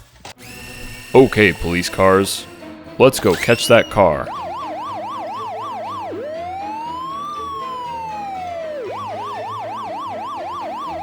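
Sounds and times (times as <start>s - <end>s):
police siren wailing: 3.2s - 11.0s.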